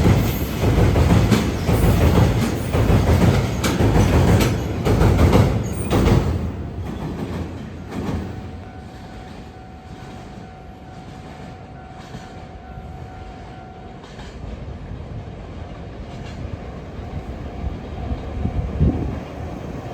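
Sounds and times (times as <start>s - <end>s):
wheels clacking over rail joints: 0.0s - 9.5s
freight train rolling past: 0.0s - 19.9s.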